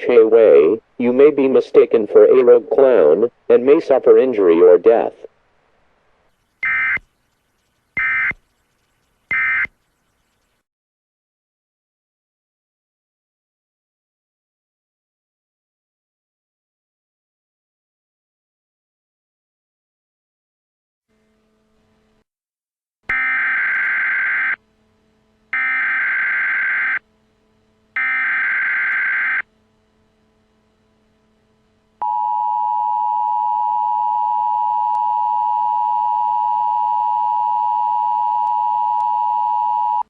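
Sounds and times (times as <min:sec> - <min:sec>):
two-tone attention signal: 0:06.6 - 0:07.0, 0:08.0 - 0:08.4, 0:09.3 - 0:09.7
data tone bursts: 0:06.6 - 0:10.6.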